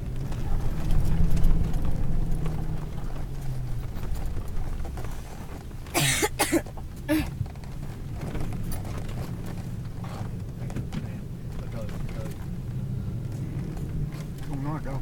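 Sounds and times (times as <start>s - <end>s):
engine drone inside car: 0.0s - 15.0s
person coughing: 6.0s - 7.3s.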